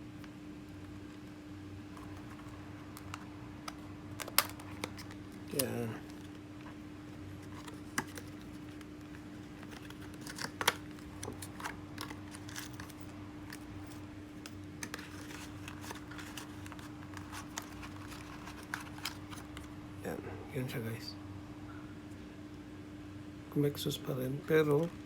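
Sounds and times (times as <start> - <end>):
steady low hum: 0.0 - 25.0
hands clicking and tapping packaging: 1.9 - 6.4, 7.4 - 13.7, 14.4 - 19.7.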